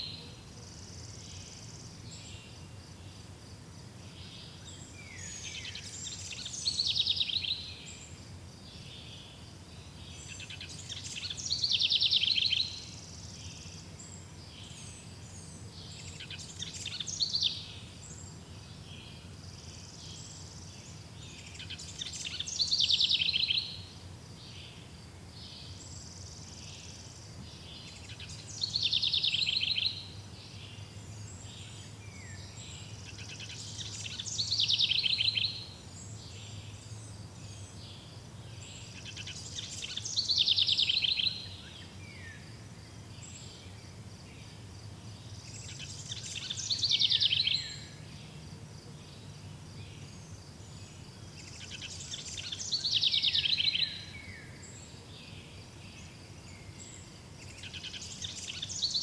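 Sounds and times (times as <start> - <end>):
faint bird chirps: 4.1 - 42.5, 43.1 - 48.4, 49.0 - 59.0
songbird trilling: 38.9 - 41.7, 45.5 - 48.0, 51.4 - 54.5.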